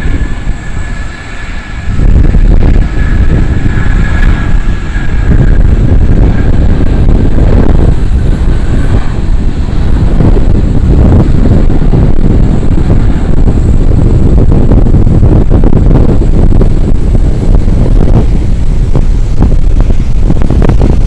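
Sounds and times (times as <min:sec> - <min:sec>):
jet engines roaring: 0:00.0 - 0:21.0
wind buffeting microphone: 0:00.0 - 0:21.0.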